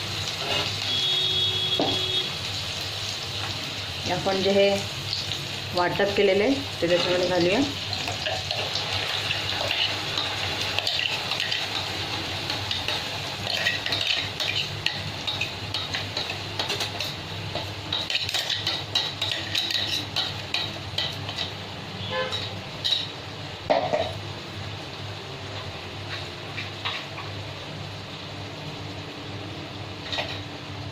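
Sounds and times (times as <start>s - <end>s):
paste sizzling in hot oil: 0.0s - 23.2s.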